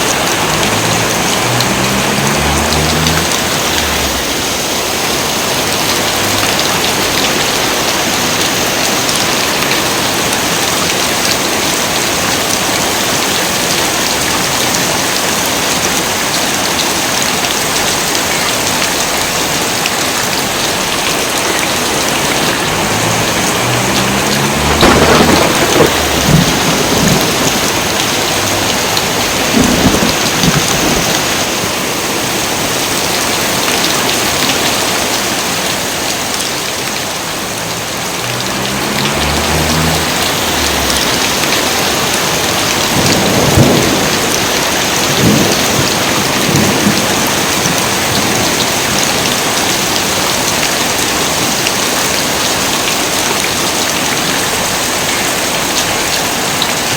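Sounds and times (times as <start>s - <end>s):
thunder rumbling: 0.0s - 7.8s, 20.8s - 31.5s, 37.3s - 49.3s
heavy rain pouring: 0.0s - 56.9s.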